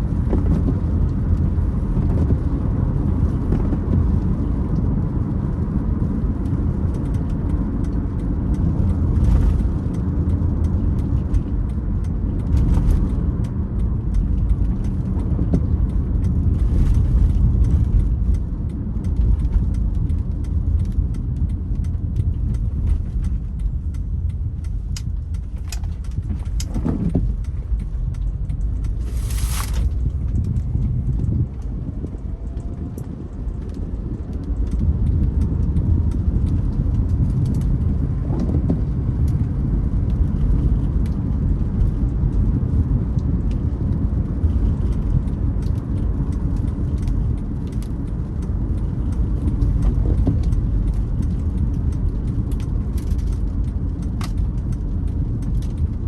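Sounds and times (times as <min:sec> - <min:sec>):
car road and engine rumble: 0:00.0 - 0:56.0
rain ticking on glass: 0:00.2 - 0:56.0
windscreen wipers creaking: 0:22.4 - 0:32.8.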